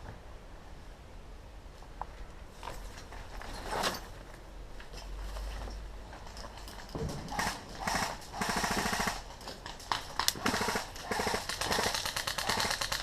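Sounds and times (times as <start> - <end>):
airsoft guns rapid-fire bursts: 7.3 - 13.0.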